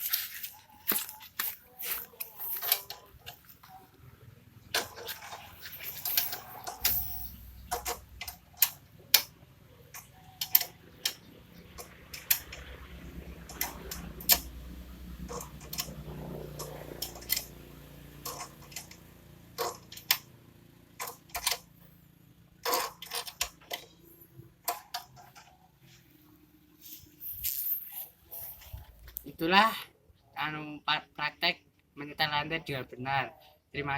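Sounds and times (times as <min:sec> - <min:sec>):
spanners clinking on metal bolts: 0:04.9 - 0:08.7.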